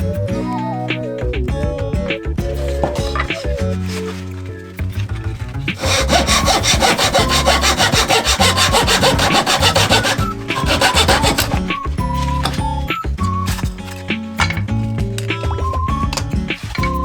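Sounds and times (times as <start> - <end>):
hand saw cutting wood: 5.8 - 11.8.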